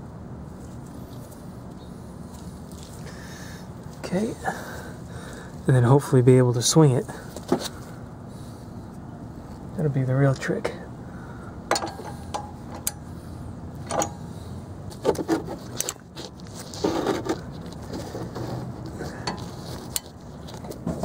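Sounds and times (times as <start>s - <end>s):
metal tools clinking and knocking: 11.7s - 13.0s.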